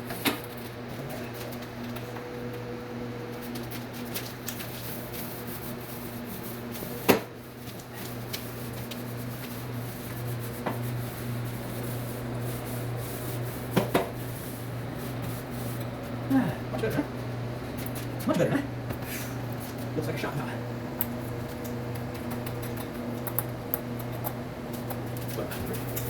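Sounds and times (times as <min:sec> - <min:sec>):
steady low hum: 0:00.0 - 0:26.0
paint roller rubbing on wall: 0:03.6 - 0:15.8.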